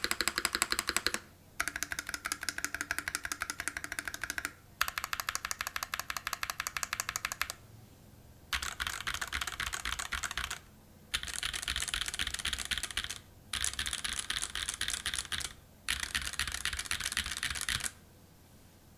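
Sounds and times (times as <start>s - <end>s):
mechanical keyboard typing: 0.0s - 7.6s, 8.5s - 18.0s.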